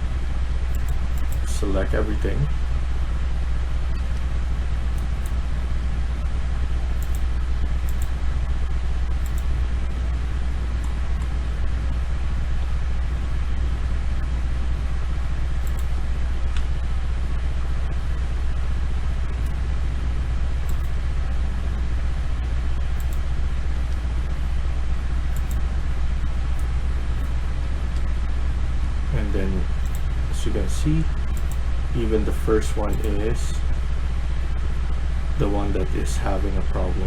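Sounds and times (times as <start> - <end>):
low hum and hiss: 0.0 - 37.0
computer mouse clicks: 0.7 - 1.5, 4.0 - 5.4, 6.9 - 8.2, 9.2 - 9.6, 15.6 - 16.0, 17.9 - 18.2, 19.3 - 19.6, 20.6 - 21.0, 23.0 - 24.1, 25.3 - 25.8, 26.6 - 27.4, 29.8 - 30.1, 31.3 - 31.6, 32.8 - 33.2.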